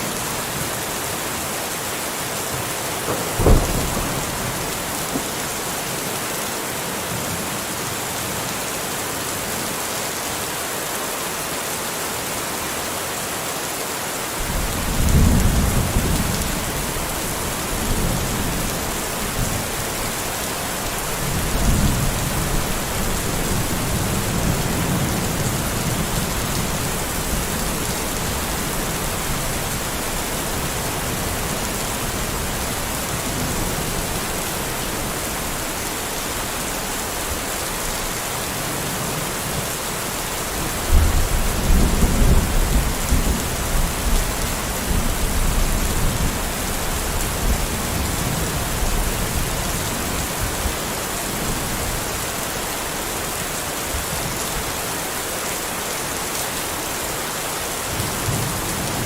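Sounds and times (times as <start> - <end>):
rain hiss: 0.0 - 59.0
thunder crack: 3.1 - 5.4
low rolling thunder rumbles: 3.1 - 5.7, 14.4 - 35.7, 40.8 - 50.7.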